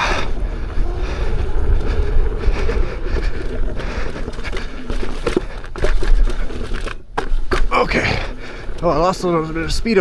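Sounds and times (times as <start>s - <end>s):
wind on microphone: 0.0s - 5.7s
tyre crunching over dirt: 0.0s - 10.0s.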